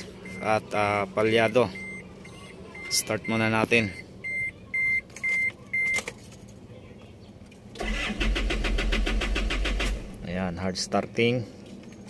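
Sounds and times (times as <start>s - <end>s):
short electronic beeps: 0.2s - 0.6s, 1.3s - 6.0s
diesel engine cranking: 7.6s - 10.5s.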